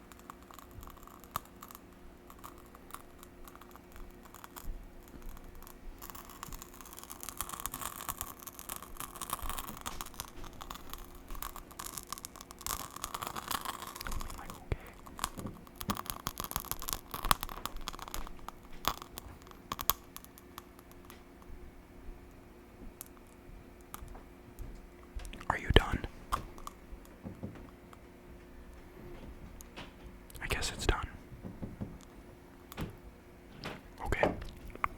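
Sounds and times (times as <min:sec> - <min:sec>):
soft hissing: 0:00.0 - 0:21.2
sharp crackles and clicks: 0:00.0 - 0:21.6, 0:22.2 - 0:28.0.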